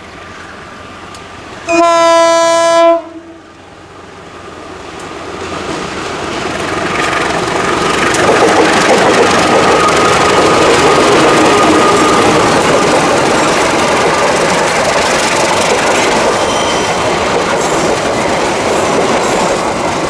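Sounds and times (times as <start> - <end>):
train engine and wheel noise: 0.0 - 20.0
locomotive horn: 1.7 - 3.5.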